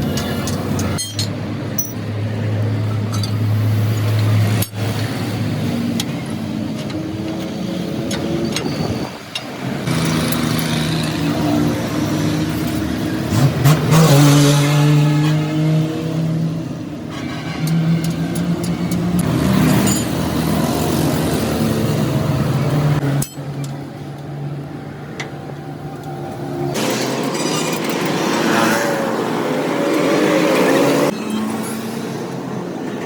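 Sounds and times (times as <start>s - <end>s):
traffic engines humming: 0.0s - 33.0s
engine revving: 9.8s - 16.8s, 26.7s - 32.0s.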